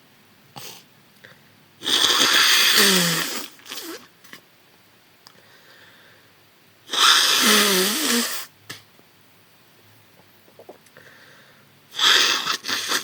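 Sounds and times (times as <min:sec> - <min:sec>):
nose snuffles: 0:00.6 - 0:00.9, 0:01.8 - 0:04.1, 0:06.9 - 0:08.5, 0:11.9 - 0:13.0
wet nasal blast: 0:01.8 - 0:04.1, 0:06.9 - 0:08.5, 0:11.9 - 0:13.0.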